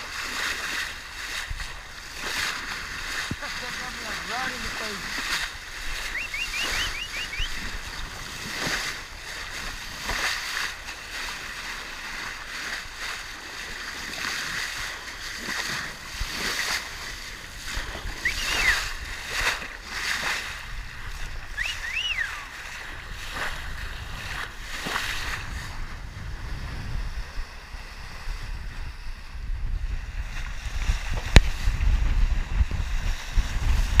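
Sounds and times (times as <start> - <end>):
water splashing against boat hull: 0.0 - 26.1
wind buffeting microphone: 0.0 - 34.0
high whistling chirps: 6.0 - 7.7, 18.2 - 18.9, 21.5 - 22.5.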